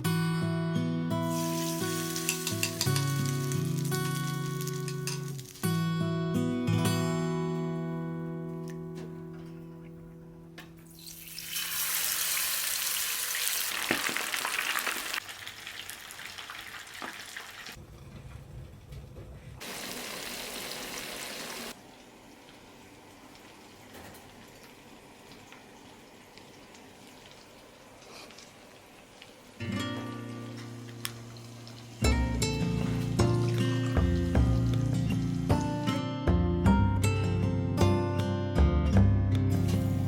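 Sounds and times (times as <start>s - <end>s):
food sizzling in hot oil: 1.2s - 5.8s, 10.9s - 17.8s, 19.6s - 21.8s, 30.6s - 35.6s.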